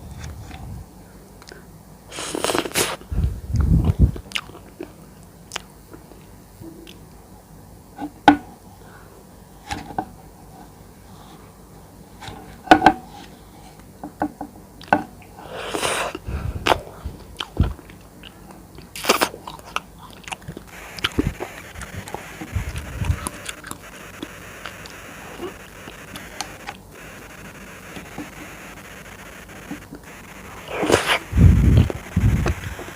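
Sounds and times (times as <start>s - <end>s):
wet chewing of jelly: 4.1s - 4.9s, 16.6s - 21.4s.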